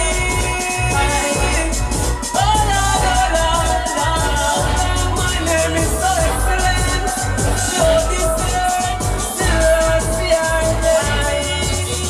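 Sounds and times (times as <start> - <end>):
dancehall music with heavy bass: 0.0 - 12.0.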